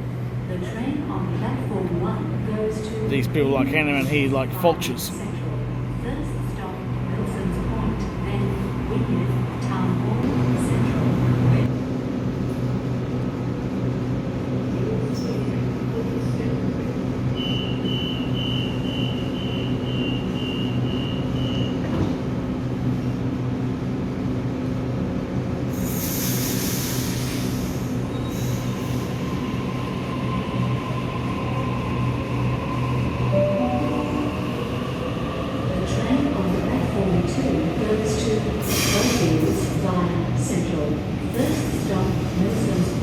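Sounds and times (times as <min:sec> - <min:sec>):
train electrical hum: 0:00.0 - 0:43.0
air hiss: 0:25.8 - 0:28.7
short high beeps: 0:33.4 - 0:34.4.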